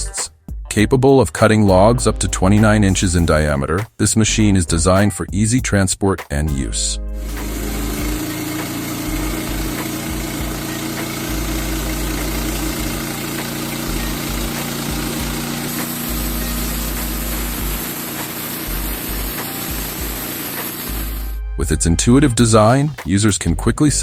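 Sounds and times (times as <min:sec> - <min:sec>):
sawmill engine running: 0:07.2 - 0:21.4.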